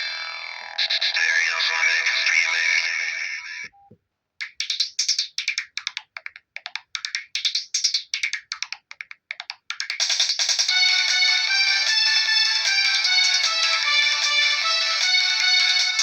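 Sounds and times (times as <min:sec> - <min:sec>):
melodic ringtone: 0:10.7 - 0:16.0.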